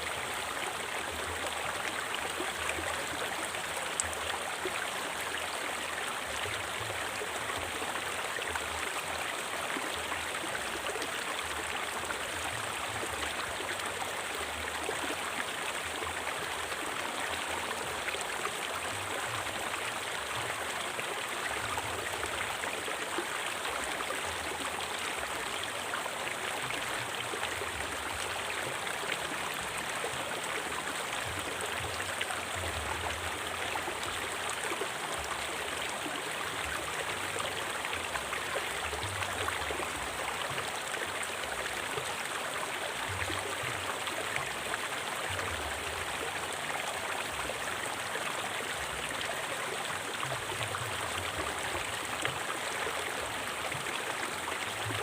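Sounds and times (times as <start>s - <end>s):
river water flowing over rocks: 0.0s - 55.0s.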